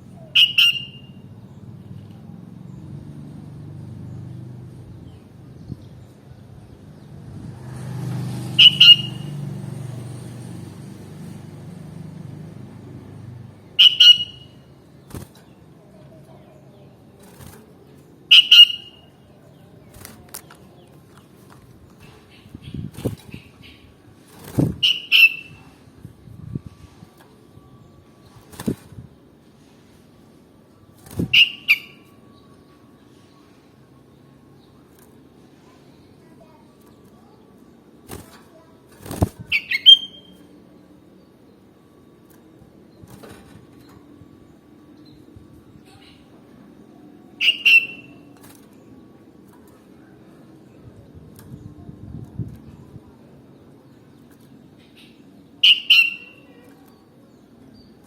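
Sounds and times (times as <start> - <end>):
bird calling: 0.2 - 1.2, 8.6 - 9.3, 13.8 - 14.7, 18.3 - 19.2, 24.8 - 25.6, 39.5 - 40.4, 47.3 - 48.3, 54.8 - 56.8
bird double call: 8.6 - 9.3, 13.8 - 14.5, 18.3 - 19.0, 55.6 - 56.5
wings fluttering: 15.0 - 15.6, 17.1 - 18.8, 19.9 - 25.8, 28.2 - 29.1, 30.9 - 31.8, 38.0 - 40.3, 42.2 - 44.0.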